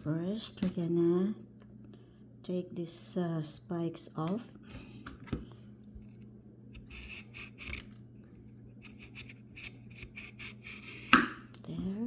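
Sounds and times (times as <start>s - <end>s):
knife scraping leaf edges: 6.8s - 7.9s, 8.8s - 11.2s.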